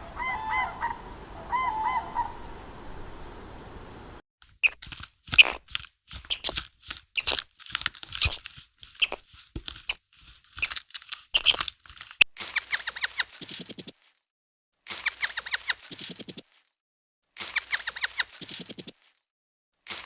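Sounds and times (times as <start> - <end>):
animal crunching food: 4.4 - 13.8.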